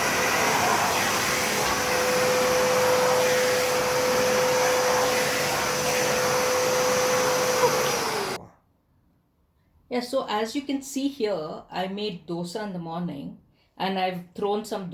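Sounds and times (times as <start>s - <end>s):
vacuum cleaner running: 0.0s - 8.4s.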